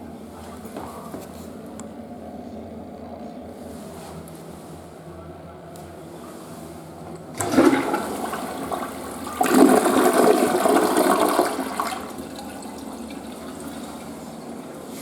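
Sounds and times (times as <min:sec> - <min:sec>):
toilet flushing: 0:07.2 - 0:15.0
toilet tank refilling hiss: 0:07.4 - 0:15.0.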